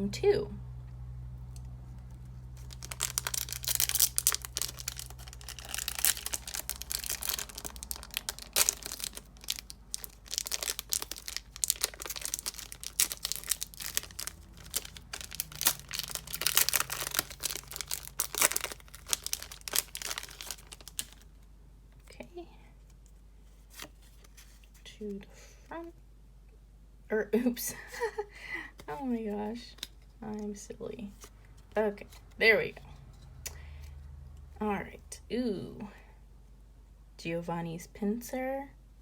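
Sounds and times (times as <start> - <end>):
foil wrapper crinkling: 2.2 - 21.3.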